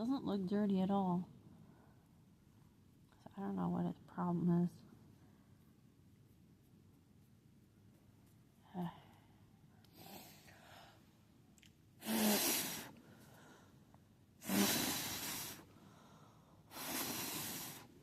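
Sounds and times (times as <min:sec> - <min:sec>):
person blowing hard: 0:12.0 - 0:13.0, 0:14.4 - 0:15.7, 0:16.7 - 0:18.0.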